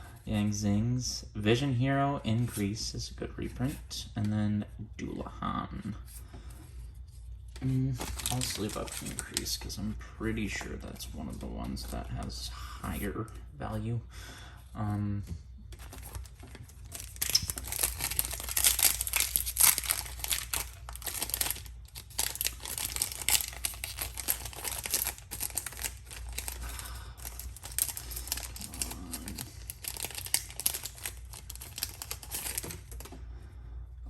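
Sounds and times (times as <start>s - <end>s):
plastic and foil crinkling: 7.6s - 9.8s, 15.7s - 33.2s
wrapper tearing: 8.0s - 9.5s, 15.8s - 33.1s.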